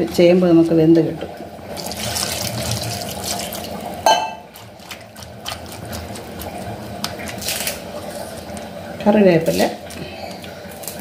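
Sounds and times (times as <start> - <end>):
water pouring into a pot: 1.2 - 8.5.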